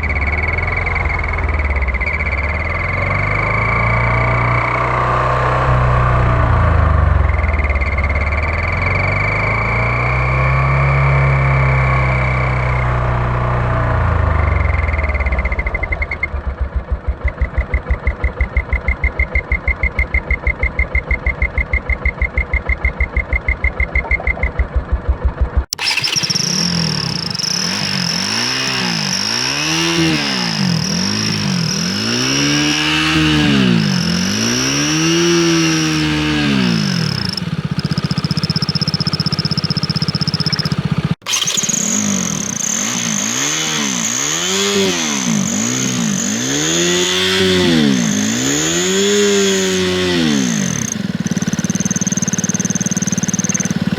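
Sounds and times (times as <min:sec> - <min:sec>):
motorcycle engine revving: 0:00.0 - 0:53.9
high turbo whistle: 0:25.8 - 0:53.9.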